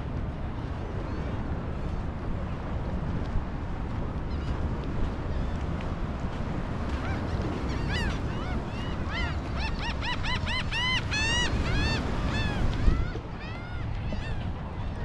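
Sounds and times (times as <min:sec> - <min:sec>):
wind and surf rushing: 0:00.0 - 0:15.0
gulls calling: 0:07.0 - 0:15.0.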